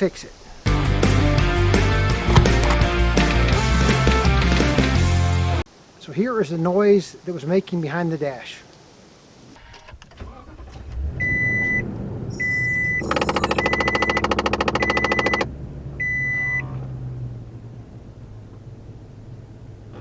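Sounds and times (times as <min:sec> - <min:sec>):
rapid clicking behind dashboard: 0:13.2 - 0:15.5.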